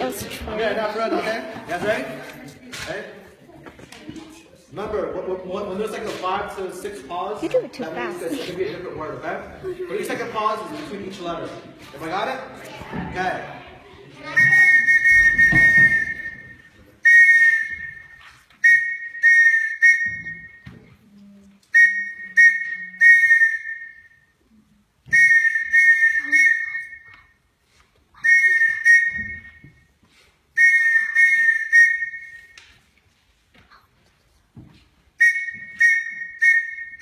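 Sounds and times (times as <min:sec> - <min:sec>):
shrill whistle blasts: 0:14.2 - 0:20.7, 0:21.7 - 0:24.3, 0:25.1 - 0:27.3, 0:28.2 - 0:29.9, 0:30.6 - 0:32.6, 0:35.2 - 0:37.0.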